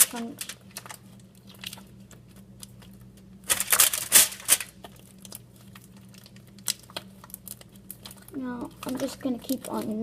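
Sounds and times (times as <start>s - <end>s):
slime wet crackling squishes: 0.0s - 10.0s.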